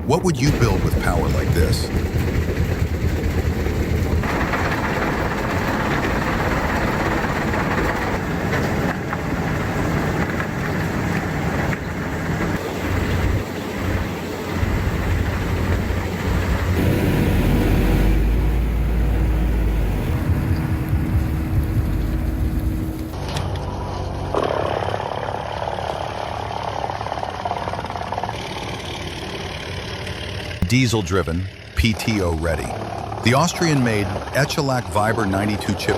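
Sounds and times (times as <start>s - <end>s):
deep rumble with held hum: 0.0s - 8.2s, 13.0s - 24.4s
diesel engine rumble: 0.0s - 24.3s, 26.0s - 35.9s
stone-crushing machinery grinding: 0.5s - 11.8s.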